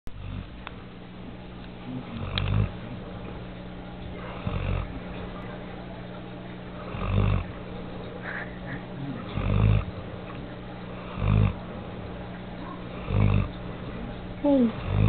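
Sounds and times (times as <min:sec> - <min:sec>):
puppy snoring: 0:00.2 - 0:00.6, 0:01.8 - 0:03.4, 0:04.2 - 0:05.2, 0:06.8 - 0:07.6, 0:08.2 - 0:11.7, 0:12.6 - 0:13.7, 0:14.4 - 0:15.0.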